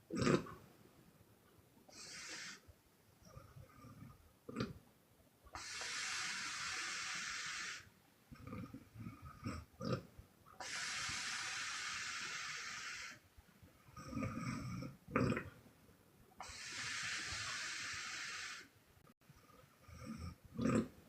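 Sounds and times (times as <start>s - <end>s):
hissing exhales: 1.9s - 2.7s, 5.5s - 7.9s, 10.6s - 13.2s, 16.4s - 18.8s.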